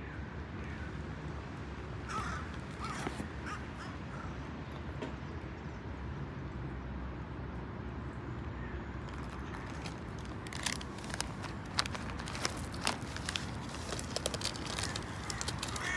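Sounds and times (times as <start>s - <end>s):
low background rumble: 8.9s - 15.9s.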